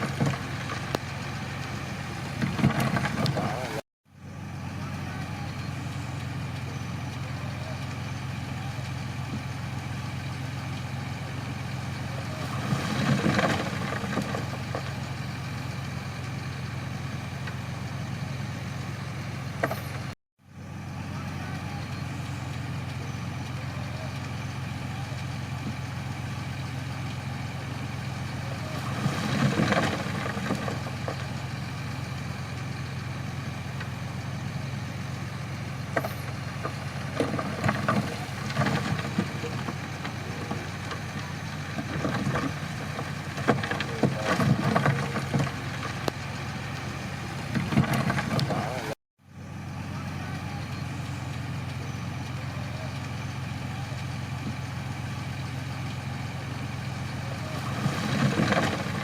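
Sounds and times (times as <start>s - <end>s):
bulldozer diesel engine running: 0.0s - 59.0s
bursts of working noise: 0.0s - 59.0s.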